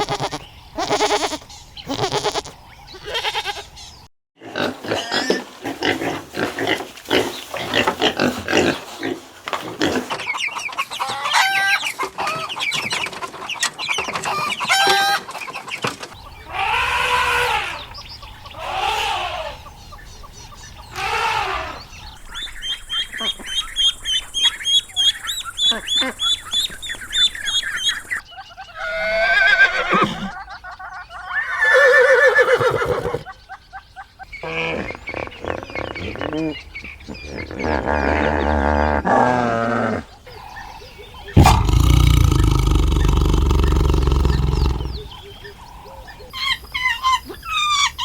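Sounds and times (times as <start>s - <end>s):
farm animal long calls: 0.0s - 3.7s, 16.4s - 19.7s, 20.9s - 28.2s, 28.8s - 30.4s, 37.5s - 45.4s
chickens clucking: 5.8s - 28.8s.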